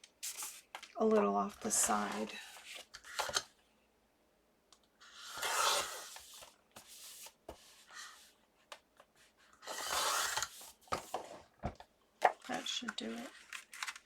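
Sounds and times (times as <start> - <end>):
trimmer blade cutting cardstock: 5.3 - 6.1, 9.6 - 10.5
paper handling clicks: 11.8 - 14.0.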